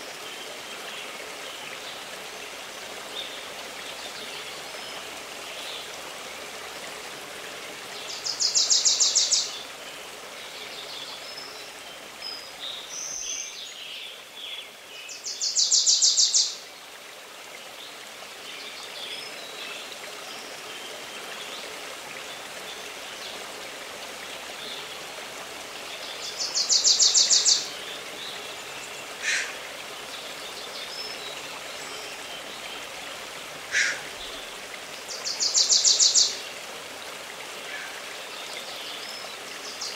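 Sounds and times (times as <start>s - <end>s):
stream running: 0.0s - 39.9s
birds chirping: 25.9s - 36.4s.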